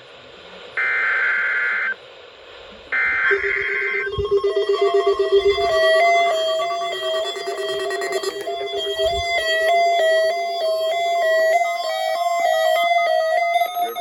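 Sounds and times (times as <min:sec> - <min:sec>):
steady low tone: 0:03.0 - 0:14.0
warbling digital data bursts: 0:03.0 - 0:14.0
stepping higher melodic tone: 0:03.3 - 0:14.0.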